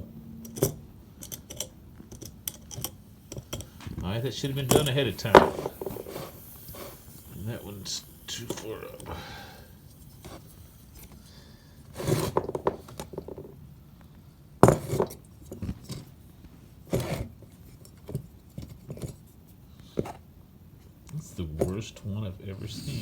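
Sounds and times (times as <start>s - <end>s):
metal camping stove and pot clinking: 0.0s - 11.2s.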